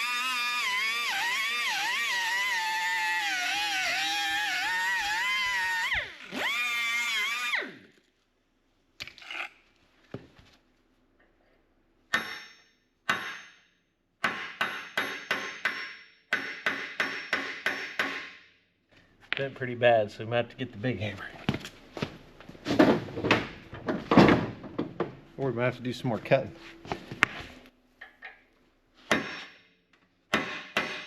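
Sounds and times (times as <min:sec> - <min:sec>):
hammer striking steel pin: 0:12.1 - 0:18.4.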